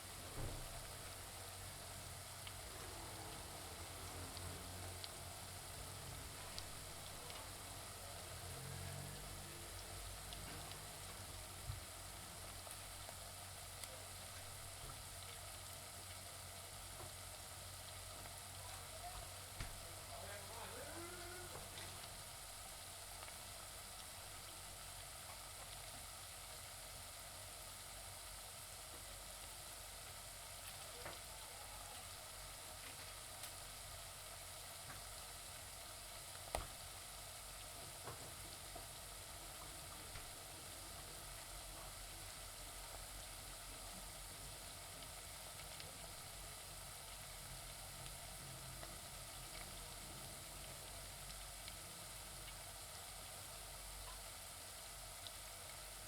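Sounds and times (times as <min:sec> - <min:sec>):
onions sizzling in a pan: 0:00.0 - 0:56.0.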